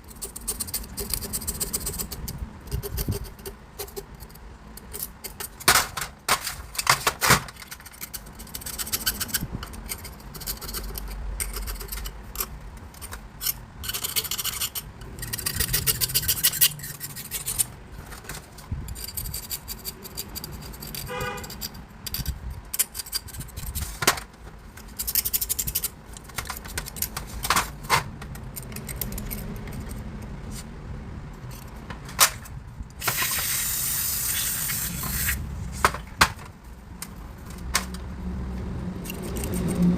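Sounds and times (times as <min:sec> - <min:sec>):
scraping and rubbing on metal: 0:00.0 - 0:30.7
steady hiss: 0:33.0 - 0:35.5.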